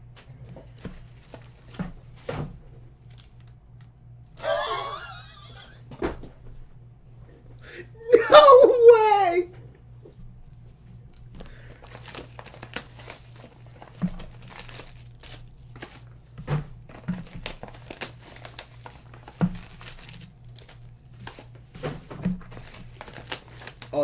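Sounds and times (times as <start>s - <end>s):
steady low hum: 0.0s - 24.0s
plastic wrapping crinkling: 0.6s - 2.2s, 3.0s - 3.9s, 10.5s - 24.0s.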